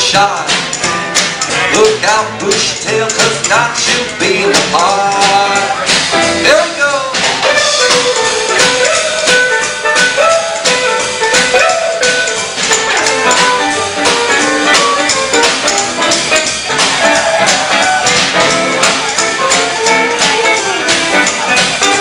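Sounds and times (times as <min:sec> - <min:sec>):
country boogie band playing: 0:00.0 - 0:22.0
steel guitar sliding notes: 0:07.4 - 0:22.0.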